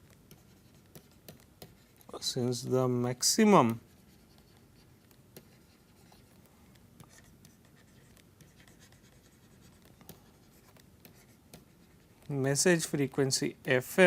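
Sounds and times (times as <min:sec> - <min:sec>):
pen scratching on paper: 0:00.0 - 0:02.2, 0:03.7 - 0:12.6.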